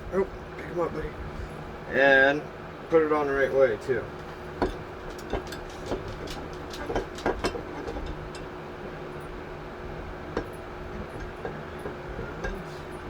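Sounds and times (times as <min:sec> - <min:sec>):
engine parts clicking and tapping: 0:04.1 - 0:13.0.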